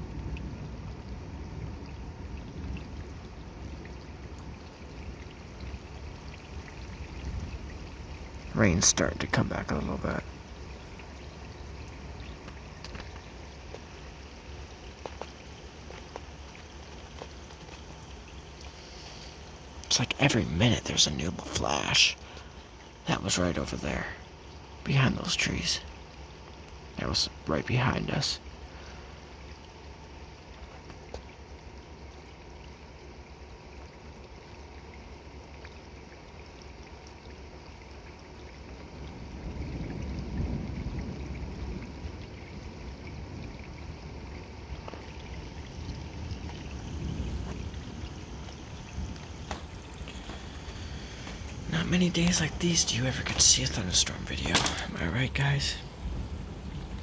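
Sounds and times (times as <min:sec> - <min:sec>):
light rain falling: 0:00.0 - 0:57.0
low thunder rumble: 0:38.8 - 0:57.0.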